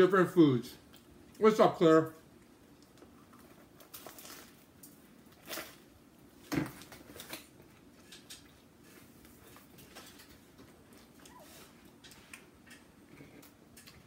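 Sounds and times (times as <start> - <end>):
chewing and crunching sandwich: 2.2 - 14.0.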